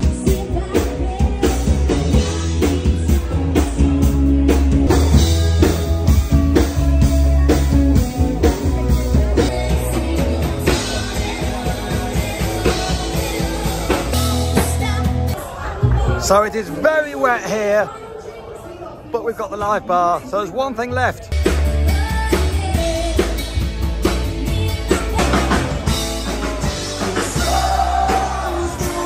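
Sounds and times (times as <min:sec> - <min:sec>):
rock music: 0:00.0 - 0:16.4, 0:21.3 - 0:29.0
person singing: 0:08.7 - 0:15.4, 0:21.8 - 0:29.0.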